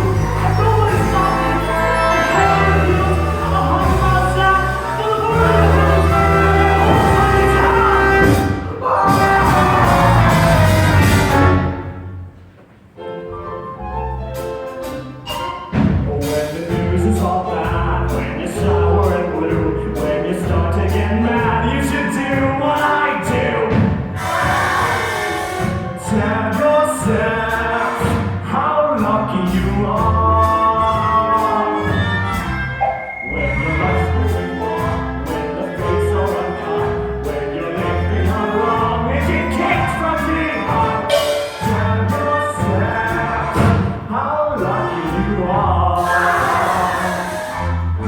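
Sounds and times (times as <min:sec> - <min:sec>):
group of voices singing: 0:00.0 - 0:11.8, 0:17.1 - 0:25.6, 0:33.0 - 0:48.0
low held bass notes: 0:00.0 - 0:12.4
instrumental accompaniment: 0:00.0 - 0:48.0.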